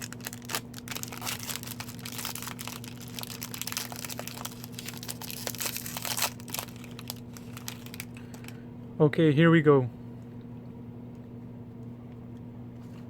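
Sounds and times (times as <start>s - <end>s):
wrapper crinkling: 0.0s - 8.6s.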